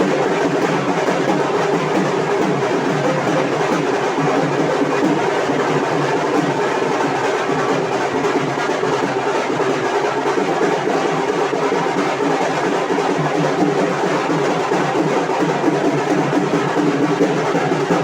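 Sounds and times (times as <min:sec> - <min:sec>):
drums playing: 0:00.0 - 0:18.0.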